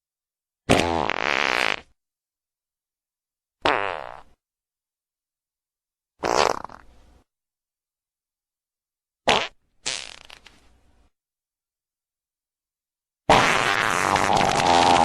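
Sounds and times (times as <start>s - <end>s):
fart sounds: 0.7s - 2.0s, 3.6s - 4.4s, 6.2s - 6.9s, 9.3s - 10.5s, 13.3s - 15.0s.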